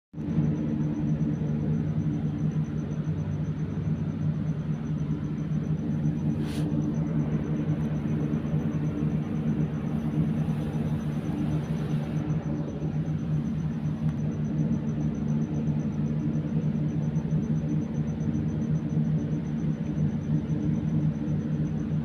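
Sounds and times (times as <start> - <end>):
faint high whine: 0.2 - 22.0
low machine hum: 0.2 - 22.0.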